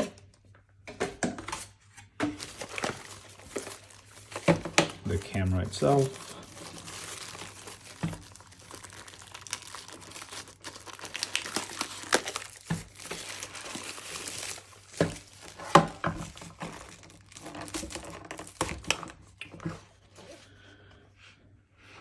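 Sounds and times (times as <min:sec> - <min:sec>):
plastic packaging crinkling: 0:02.2 - 0:19.7.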